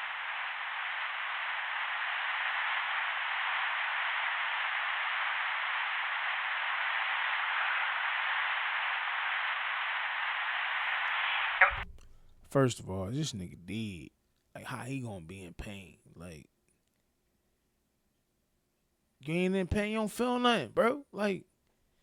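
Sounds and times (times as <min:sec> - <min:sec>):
static hiss: 0:00.0 - 0:12.0.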